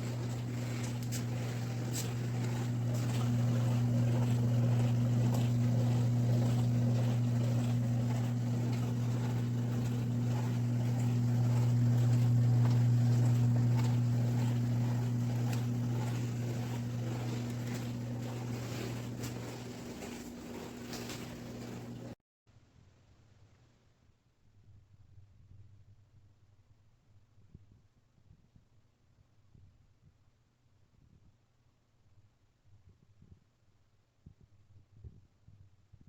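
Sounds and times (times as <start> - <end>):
dishwasher electrical buzz: 0.0 - 22.2.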